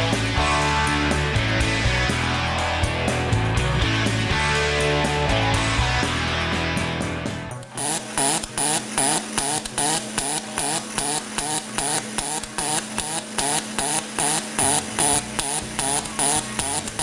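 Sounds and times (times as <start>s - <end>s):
pulsed welding arc buzzing: 7.6s - 17.0s.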